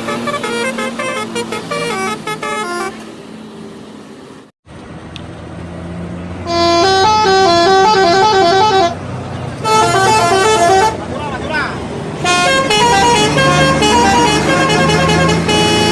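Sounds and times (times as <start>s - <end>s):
musical bus horn tune: 0.0s - 3.1s, 6.4s - 11.1s, 12.2s - 15.9s
bus engine running: 0.0s - 15.9s.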